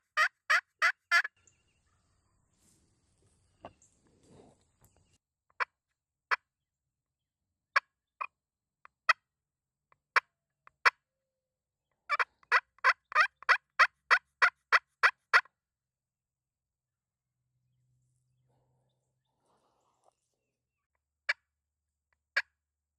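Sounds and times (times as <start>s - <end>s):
turkey call clucks: 0.0s - 2.0s, 12.0s - 15.5s
turkey call yelps: 0.2s - 1.3s, 12.1s - 15.5s.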